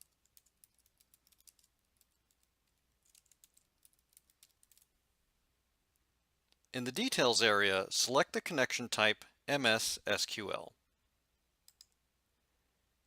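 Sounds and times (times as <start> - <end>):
computer keyboard typing: 0.0 - 4.9, 11.6 - 12.0.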